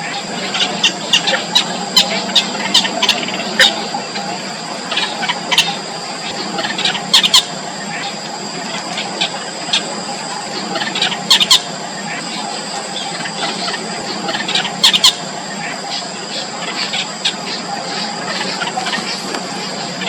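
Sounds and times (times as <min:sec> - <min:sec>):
high-pitched background drone: 0:00.0 - 0:20.0
nestlings squeaky calls: 0:00.0 - 0:20.0.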